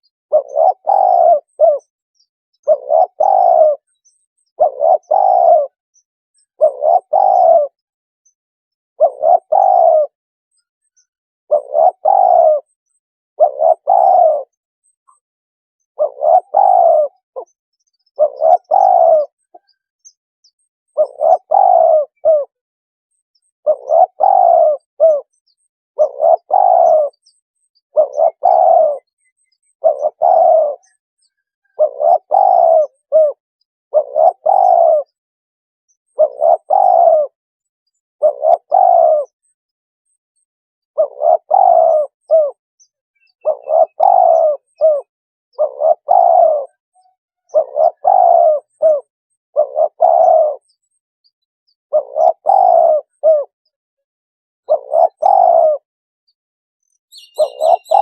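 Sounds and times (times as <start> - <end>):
dove cooing: 0.0 - 1.9, 2.6 - 5.8, 6.5 - 7.8, 9.0 - 10.2, 11.5 - 12.8, 13.4 - 15.2, 16.0 - 19.8, 20.9 - 22.6, 23.6 - 25.4, 26.0 - 35.2, 36.1 - 37.4, 38.2 - 39.4, 40.9 - 42.6, 43.2 - 50.7, 51.9 - 53.6, 54.6 - 55.9, 57.1 - 58.0.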